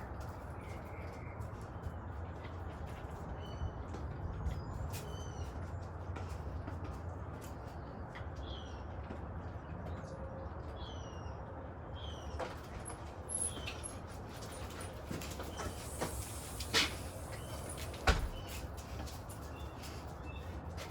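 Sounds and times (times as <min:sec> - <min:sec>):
small birds chirping: 0:15.4 - 0:18.7.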